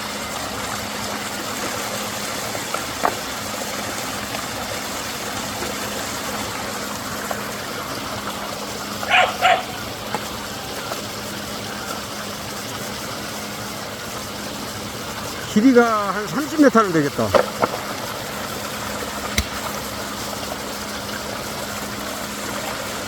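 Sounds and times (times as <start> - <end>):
dog barking sharply: 9.1 - 9.8
waterfall rushing: 15.4 - 17.3.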